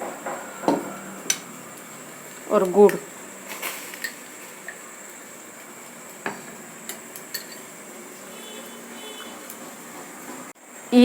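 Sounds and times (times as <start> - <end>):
faint hiss: 0.0 - 11.0
spoon clinking against metal pan: 6.3 - 7.8.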